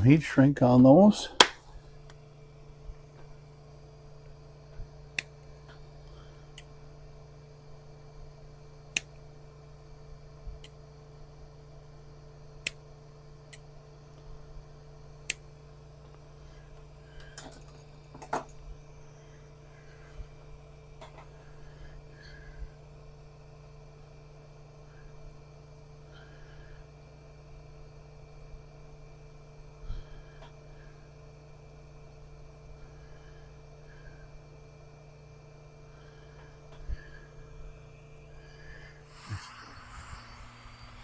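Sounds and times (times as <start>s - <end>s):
low hum: 38.6s - 41.0s.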